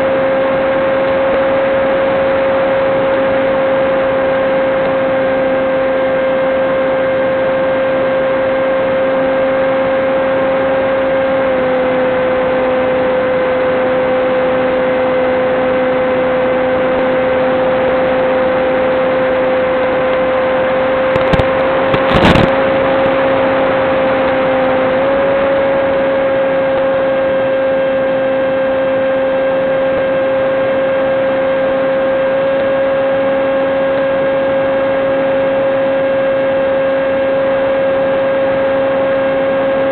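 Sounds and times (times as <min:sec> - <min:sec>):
electric motor high whine: 0:00.0 - 0:39.9.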